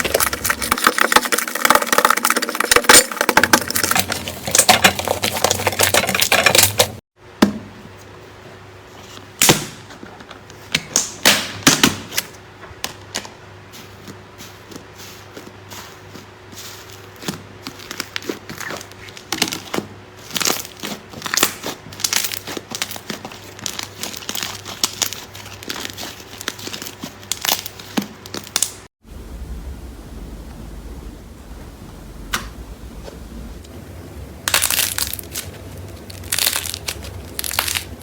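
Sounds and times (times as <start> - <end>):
faint steady hum: 29.0 - 38.0
slime crackling and popping: 34.5 - 38.0.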